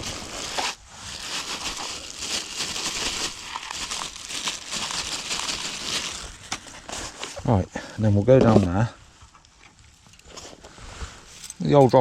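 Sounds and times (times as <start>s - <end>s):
plastic bags crinkling: 0.0s - 7.4s.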